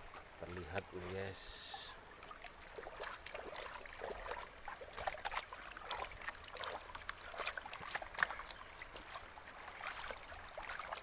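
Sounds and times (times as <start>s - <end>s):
water sloshing in a pan: 0.0s - 11.0s.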